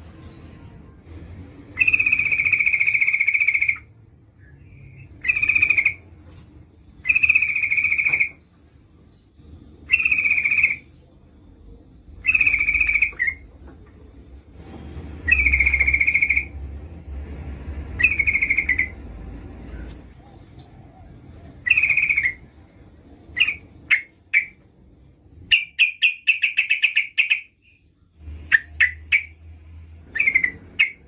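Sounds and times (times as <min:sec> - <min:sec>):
bird chattering calls: 0:01.8 - 0:03.9, 0:04.9 - 0:06.0, 0:07.0 - 0:08.4, 0:09.9 - 0:10.9, 0:12.2 - 0:13.4, 0:18.0 - 0:19.0, 0:21.6 - 0:22.4, 0:25.5 - 0:27.7, 0:30.1 - 0:31.0.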